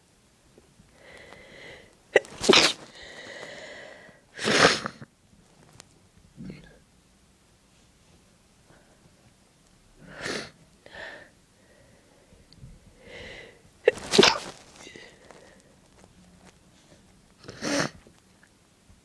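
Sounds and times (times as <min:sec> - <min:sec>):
sharp breaths: 0:01.0 - 0:04.7, 0:13.0 - 0:15.8
person sneezing: 0:02.1 - 0:03.4, 0:04.4 - 0:05.0, 0:13.9 - 0:15.2, 0:17.4 - 0:18.0.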